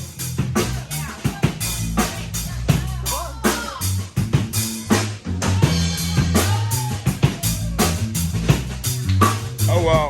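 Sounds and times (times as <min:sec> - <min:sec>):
bass line: 0:00.0 - 0:10.0
drum kit steady beat: 0:00.0 - 0:10.0
live band music: 0:00.0 - 0:10.0.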